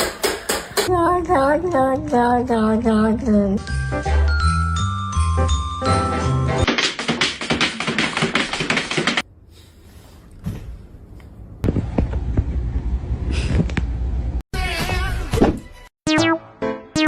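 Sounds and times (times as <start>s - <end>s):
rapid taps: 6.7s - 9.2s.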